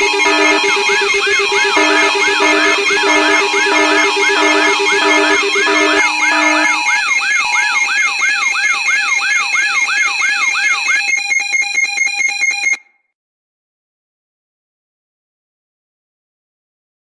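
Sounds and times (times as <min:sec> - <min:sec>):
rapid pulsing buzz: 0:00.0 - 0:07.7
steady electronic tones: 0:00.0 - 0:08.8
pulsing beeps: 0:00.0 - 0:09.2
whooping electronic siren: 0:00.0 - 0:12.7.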